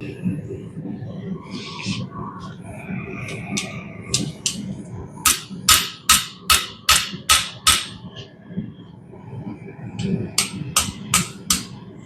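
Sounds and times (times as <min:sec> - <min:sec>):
hammer ringing on steel: 0:05.3 - 0:08.0.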